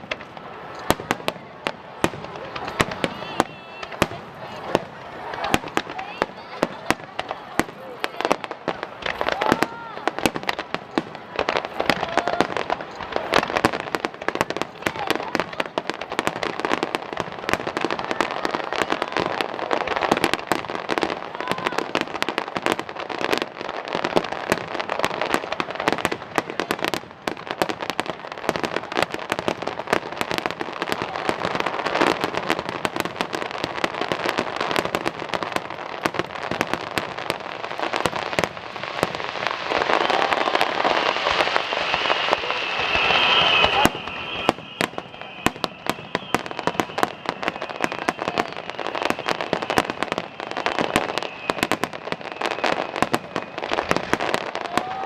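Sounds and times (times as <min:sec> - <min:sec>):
fireworks crackling: 0:00.0 - 0:55.0
high steady whine: 0:40.6 - 0:45.8.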